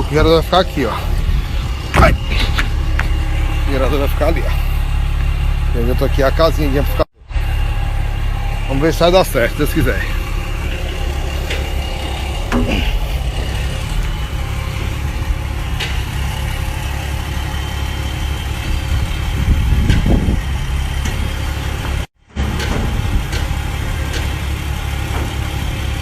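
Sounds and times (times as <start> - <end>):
crane diesel engine running: 0.0 - 26.0.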